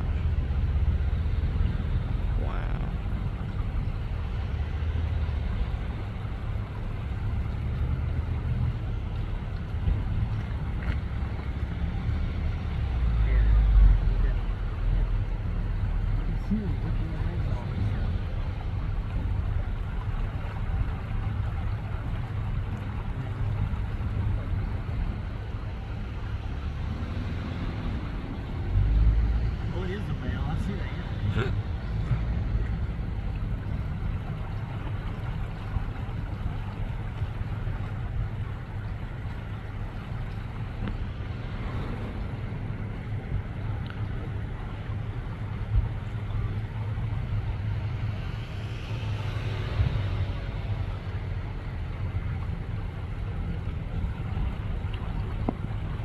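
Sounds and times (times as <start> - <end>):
faint voices: 0.0 - 4.1, 11.2 - 20.4, 27.6 - 36.1
low rumbling noise: 0.0 - 56.0.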